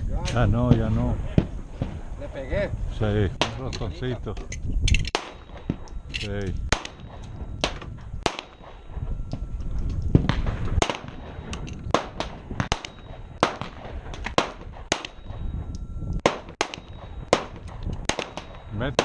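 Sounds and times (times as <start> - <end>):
gunshots: 3.4 - 3.7, 5.1 - 6.0, 6.7 - 9.2, 10.1 - 15.6, 16.2 - 19.0.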